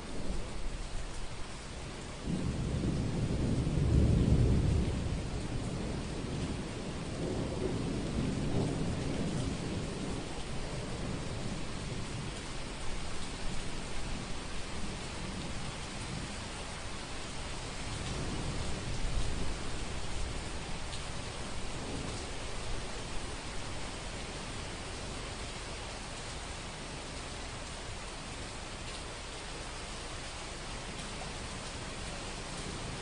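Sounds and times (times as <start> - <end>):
heavy rain falling: 0.0 - 33.0
rumbling thunder: 2.2 - 16.4, 17.5 - 24.1.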